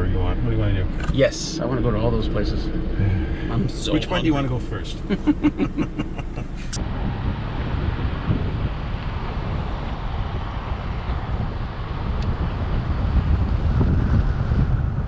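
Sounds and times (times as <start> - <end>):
person talking: 0.0 - 6.8
vehicle road rumble: 0.0 - 15.0
wind noise: 5.8 - 15.0.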